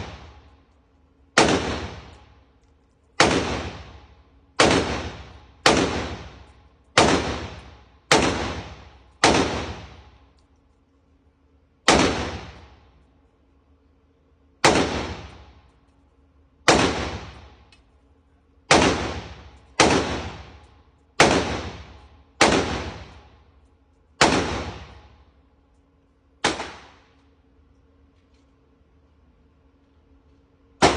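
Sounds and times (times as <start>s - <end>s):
rifle shots echoing: 0.0s - 0.5s, 1.3s - 2.5s, 3.2s - 10.3s, 11.8s - 12.9s, 14.6s - 15.6s, 16.6s - 17.7s, 18.7s - 23.5s, 24.2s - 25.3s, 26.4s - 27.2s.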